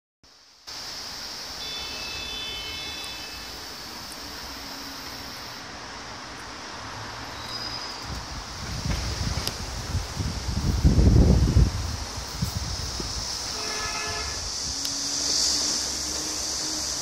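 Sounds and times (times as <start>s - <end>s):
steady vehicle noise: 0.6s - 17.0s
thin high tones: 1.6s - 5.6s, 7.3s - 8.1s.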